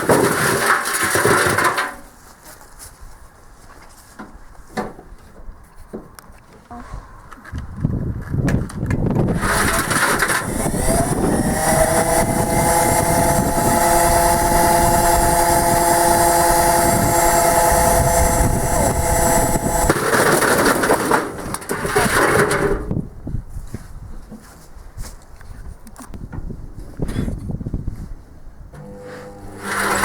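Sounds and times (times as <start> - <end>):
washing machine motor whining: 9.3 - 20.2, 28.8 - 30.0
washing machine rumbling and rattling: 9.3 - 22.9, 28.8 - 30.0.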